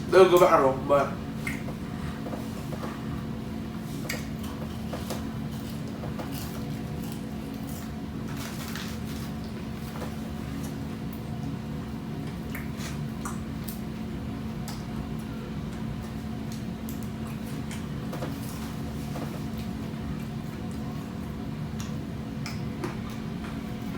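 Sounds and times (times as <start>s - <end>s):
steady low hum: 0.0s - 23.9s
wet chewing and lip-smacking: 4.0s - 8.0s, 12.2s - 13.8s.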